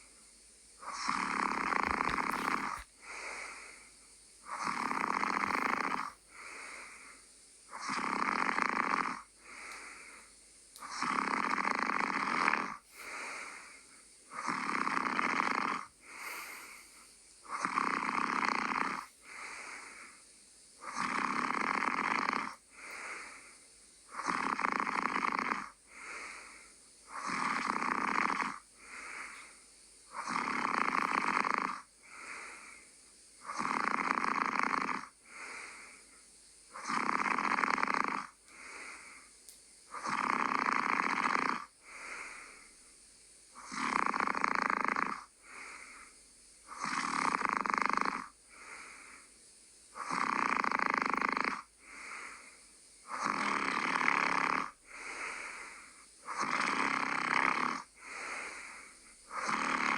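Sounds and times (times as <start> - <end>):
soft breath: 0.8 - 8.5, 9.4 - 21.4, 22.4 - 33.7, 35.2 - 37.0, 38.5 - 40.2, 41.8 - 42.9, 45.4 - 47.1, 48.4 - 50.2, 51.8 - 53.9, 54.8 - 59.9
person snoring: 0.8 - 20.2, 20.8 - 36.1, 36.7 - 39.3, 39.9 - 42.7, 43.6 - 49.3, 49.9 - 59.9.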